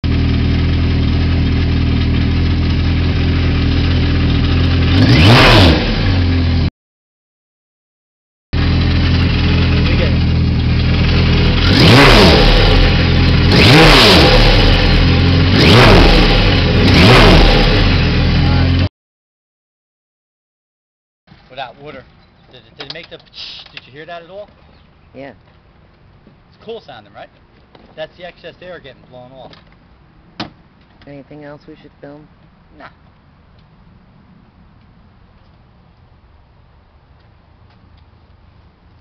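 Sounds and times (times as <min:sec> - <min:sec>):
jet ski engine revving: 0:03.3 - 0:06.6, 0:08.6 - 0:18.8.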